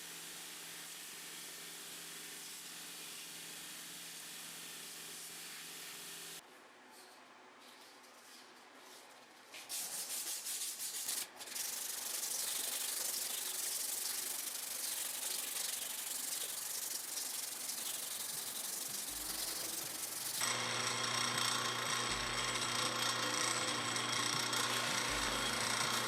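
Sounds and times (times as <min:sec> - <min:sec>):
sanding a knife handle: 0:09.7 - 0:26.0.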